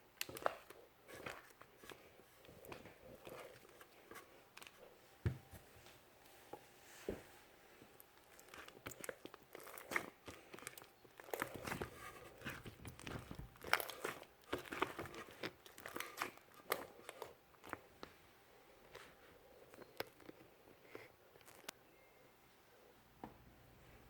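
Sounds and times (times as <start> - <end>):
hands squishing slime: 0.0 - 4.8, 7.8 - 18.2.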